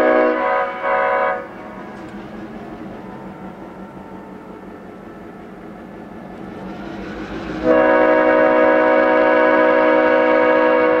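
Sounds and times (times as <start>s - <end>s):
locomotive air horn chord: 0.0s - 4.5s, 7.5s - 11.0s.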